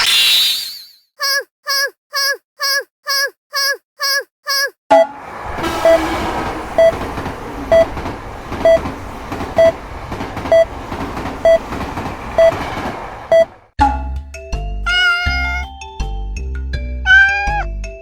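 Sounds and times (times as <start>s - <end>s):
railroad crossing bell: 4.9s - 9.0s
passing train: 4.9s - 13.7s.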